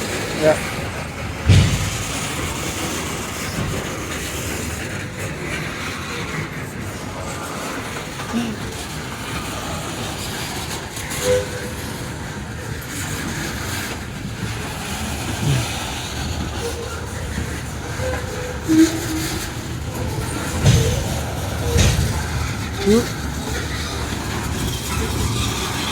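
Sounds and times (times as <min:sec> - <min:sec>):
train cars rumbling: 0:00.0 - 0:25.9
loud clunks: 0:01.4 - 0:02.2, 0:19.1 - 0:22.8.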